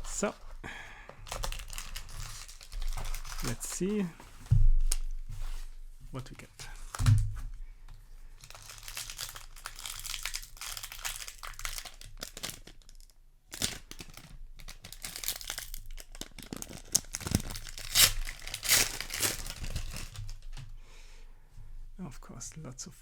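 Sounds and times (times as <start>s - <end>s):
plastic wrapping crinkling and tearing: 0.0s - 0.6s, 1.2s - 4.2s, 8.4s - 20.6s.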